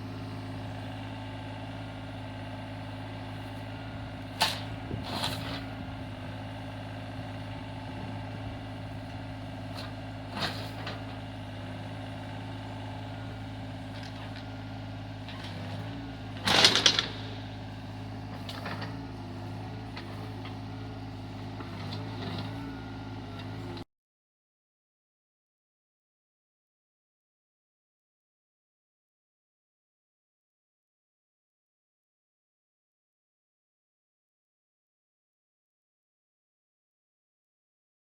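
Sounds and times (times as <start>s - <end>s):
excavator engine running: 0.0s - 23.8s
clanks and scrapes: 4.4s - 5.7s, 16.4s - 17.5s.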